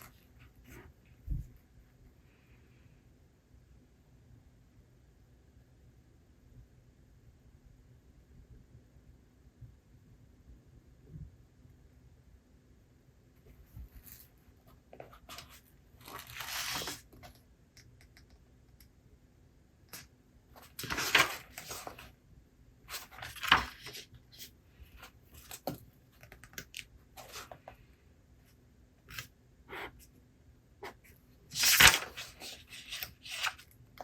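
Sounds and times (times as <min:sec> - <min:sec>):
book pages turning: 0:15.0 - 0:17.3, 0:20.6 - 0:22.1, 0:22.9 - 0:27.8, 0:30.8 - 0:33.8.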